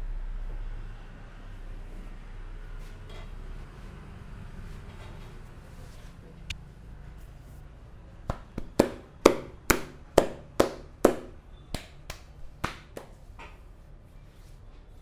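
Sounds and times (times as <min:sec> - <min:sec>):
hands striking head in chopping blows: 0:08.3 - 0:13.2.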